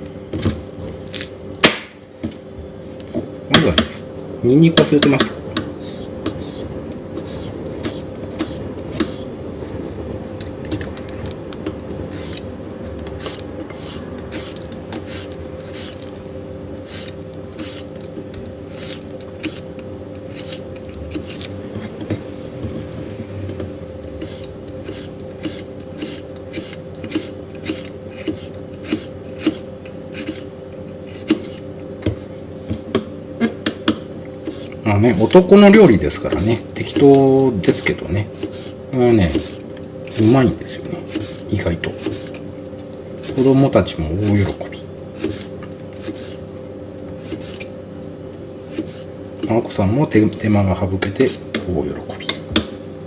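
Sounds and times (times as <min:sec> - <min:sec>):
steady low hum: 0:00.0 - 0:53.0
garlic scraping and tapping: 0:04.8 - 0:09.3, 0:10.5 - 0:34.8, 0:51.0 - 0:52.8.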